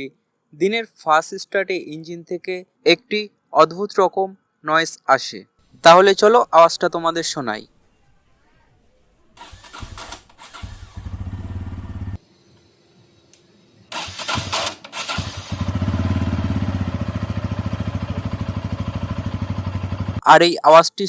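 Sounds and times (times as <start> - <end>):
motorcycle engine starting and idling: 9.4 - 12.2, 13.9 - 20.2.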